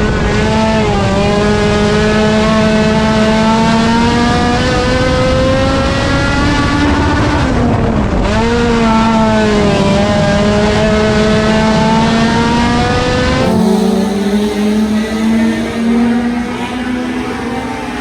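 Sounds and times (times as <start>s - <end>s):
race car engine revving high: 13.4s - 18.0s.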